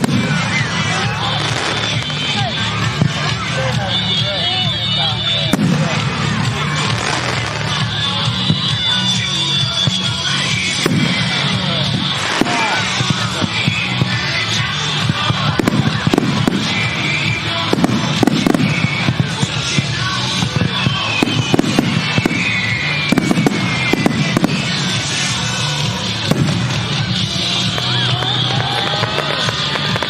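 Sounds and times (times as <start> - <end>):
firework crackling: 0.0 - 30.0
music playing: 0.0 - 30.0
firework shells booming: 14.9 - 30.0.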